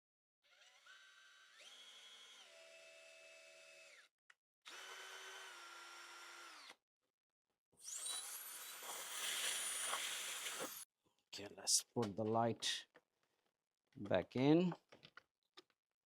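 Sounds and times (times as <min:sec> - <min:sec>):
power drill motor whine: 0:00.5 - 0:04.1, 0:04.7 - 0:06.8.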